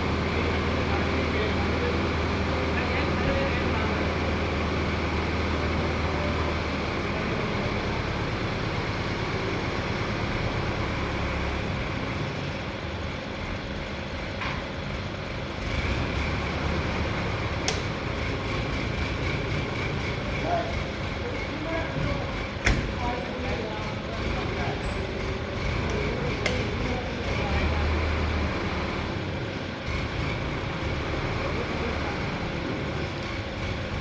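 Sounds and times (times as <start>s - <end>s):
crane diesel engine rumbling: 0.0s - 34.0s
sharp click: 17.6s - 17.9s.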